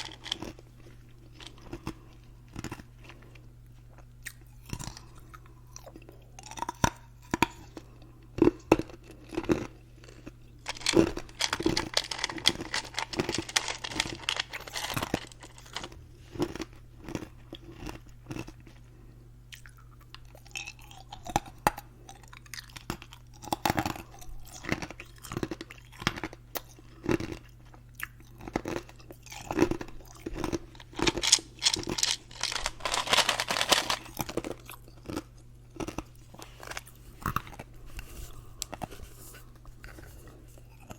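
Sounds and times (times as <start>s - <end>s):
ice being crunched: 10.7s - 15.9s.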